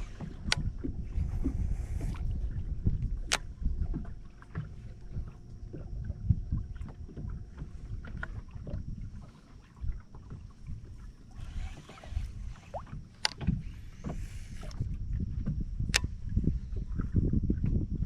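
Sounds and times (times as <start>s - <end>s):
faint steady hum: 0.0s - 18.0s
wind rumble on microphone: 0.0s - 18.0s
knocks and clicks from handling gear: 13.2s - 13.6s.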